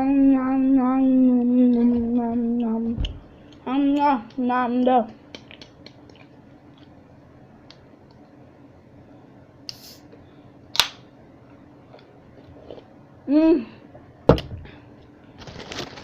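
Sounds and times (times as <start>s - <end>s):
person chewing: 5.3s - 6.9s.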